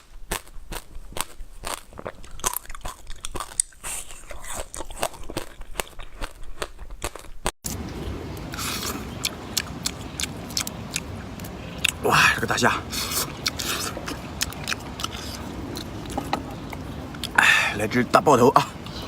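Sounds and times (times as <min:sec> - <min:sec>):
person crunching food: 0:00.2 - 0:17.4
steady hiss: 0:07.7 - 0:19.0.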